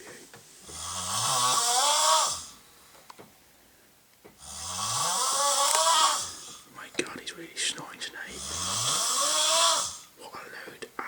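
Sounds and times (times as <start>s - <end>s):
man snoring loudly: 0.6s - 2.6s, 4.4s - 6.6s, 8.2s - 10.1s.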